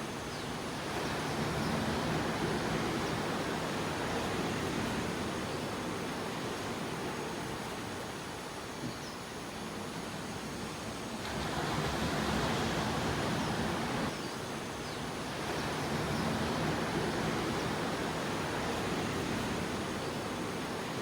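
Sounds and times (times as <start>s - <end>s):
small sea waves washing ashore: 10.9s - 14.2s, 15.0s - 21.0s.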